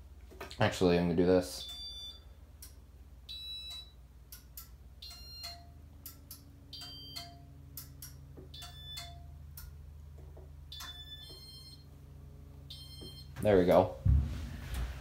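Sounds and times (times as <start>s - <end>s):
ceiling fan motor hum: 0.0s - 15.0s.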